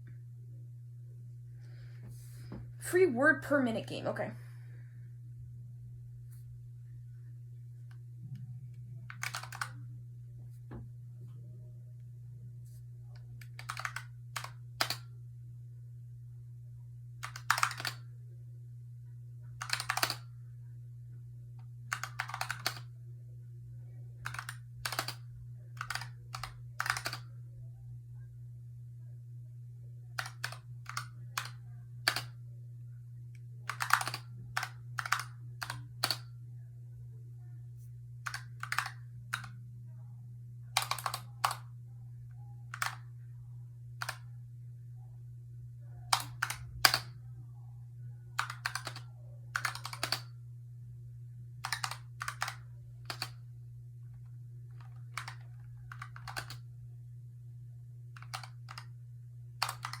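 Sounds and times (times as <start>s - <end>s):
steady low hum: 0.0s - 60.0s
keyboard keystrokes clicking: 9.1s - 9.8s, 13.4s - 15.1s, 17.2s - 18.0s, 19.6s - 20.3s, 21.9s - 22.9s, 24.2s - 25.2s, 25.8s - 27.3s, 30.2s - 32.3s, 33.7s - 36.3s, 38.3s - 39.6s, 40.8s - 41.6s, 42.7s - 43.0s, 44.0s - 44.3s, 46.1s - 47.1s, 48.4s - 50.3s, 51.6s - 53.4s, 54.8s - 56.6s, 58.2s - 58.9s, 59.6s - 60.0s.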